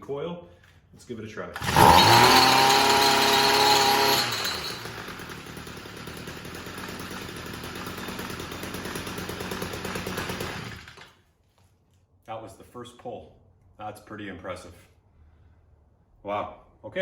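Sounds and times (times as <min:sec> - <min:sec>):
small two-stroke engine idling: 0:01.6 - 0:11.2.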